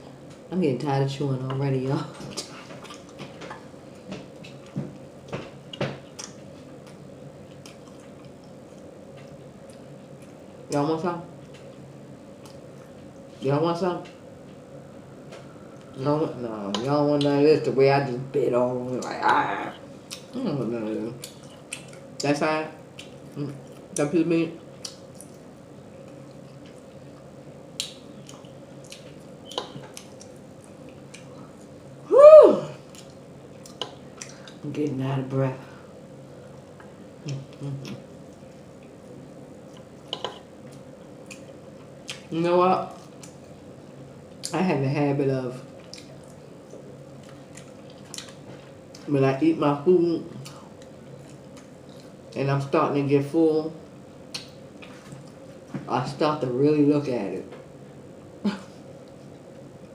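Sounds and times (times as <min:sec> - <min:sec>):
faint steady hum: 0:00.0 - 0:59.9
mouth chewing with lip smacking: 0:22.9 - 0:24.0, 0:24.7 - 0:31.8, 0:39.6 - 0:42.3, 0:45.8 - 0:49.0, 0:54.3 - 0:55.4
wet mouth smacks chewing: 0:54.3 - 0:55.4.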